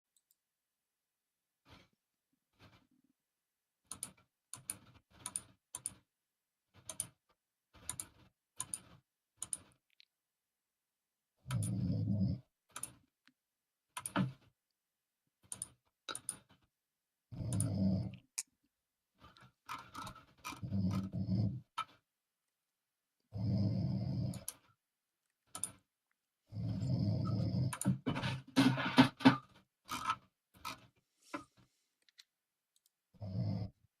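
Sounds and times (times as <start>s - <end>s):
snoring: 11.5s - 12.5s, 17.3s - 18.2s, 20.6s - 21.7s, 23.3s - 24.5s, 26.5s - 27.8s, 33.2s - 33.8s.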